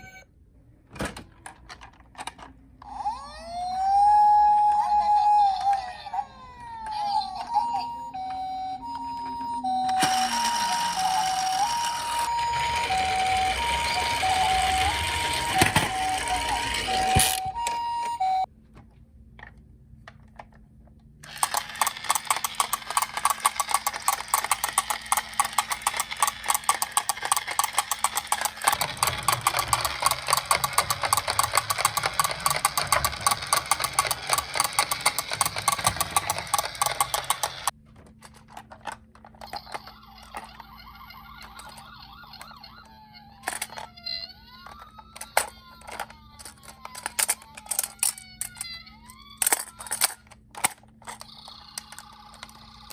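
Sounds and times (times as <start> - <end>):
toy electronic siren wailing: 0.0 - 0.2, 2.8 - 18.5, 21.3 - 37.7, 39.4 - 50.1, 51.1 - 52.9
toy cars rattling and clicking: 9.9 - 17.4, 21.2 - 52.9.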